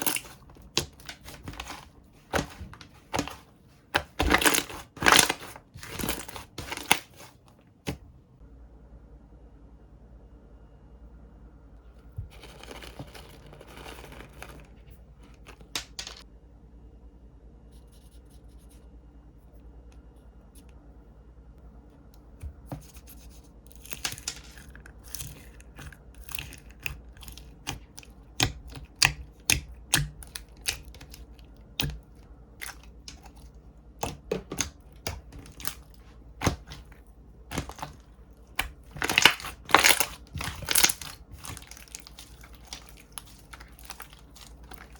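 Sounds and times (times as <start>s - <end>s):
slime rustling: 0.0s - 8.0s, 12.0s - 15.8s, 22.5s - 44.9s.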